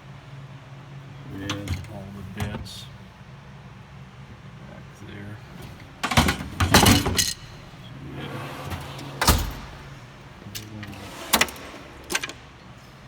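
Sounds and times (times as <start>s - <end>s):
metal drawers sliding on runners: 1.3s - 2.9s, 5.4s - 12.9s.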